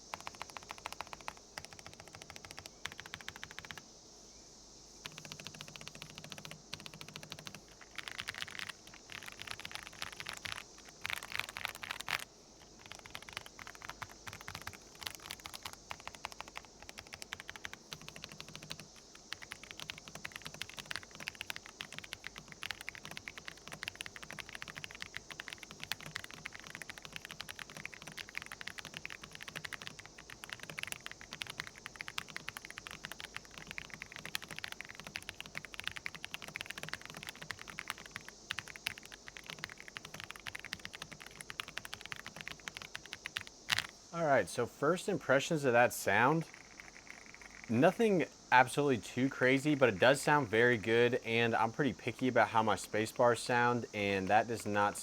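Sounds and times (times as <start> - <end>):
fast typing on mechanical keyboard: 0.0 - 3.8, 5.0 - 43.9, 46.5 - 47.9.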